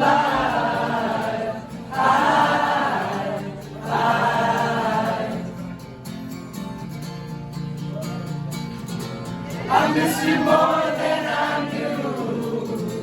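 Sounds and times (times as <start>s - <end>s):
voices singing wordless phrases: 0.0s - 5.6s, 9.6s - 13.0s.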